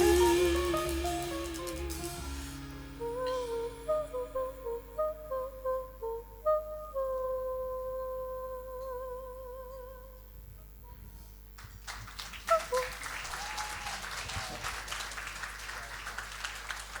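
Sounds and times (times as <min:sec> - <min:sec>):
singer holding vibrato note: 0:00.0 - 0:10.2
audience applause: 0:11.6 - 0:17.0
audience cheer: 0:12.5 - 0:17.0.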